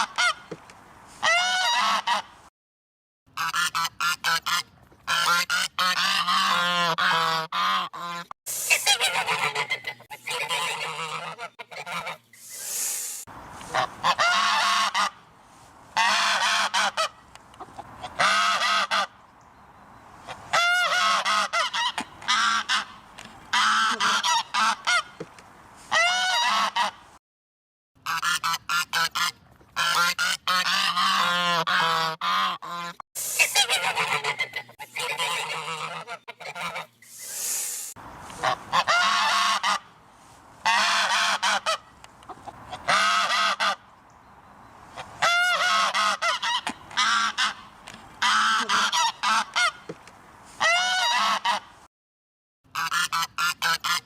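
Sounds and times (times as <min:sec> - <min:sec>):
geese honking: 0:01.2 - 0:02.3, 0:03.4 - 0:12.8, 0:13.6 - 0:15.3, 0:15.9 - 0:19.2, 0:20.2 - 0:25.2, 0:25.9 - 0:27.0, 0:28.0 - 0:37.4, 0:38.2 - 0:40.0, 0:40.6 - 0:43.9, 0:44.9 - 0:49.9, 0:50.6 - 0:51.7, 0:52.8 - 0:54.0.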